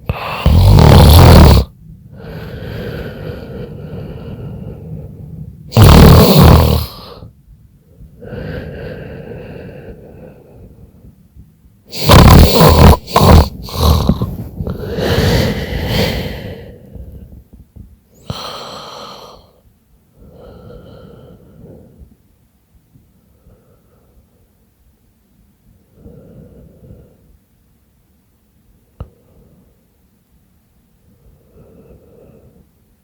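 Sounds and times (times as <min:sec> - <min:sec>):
woman snoring: 0:00.0 - 0:04.9, 0:05.7 - 0:07.3, 0:11.9 - 0:16.8, 0:18.2 - 0:19.6.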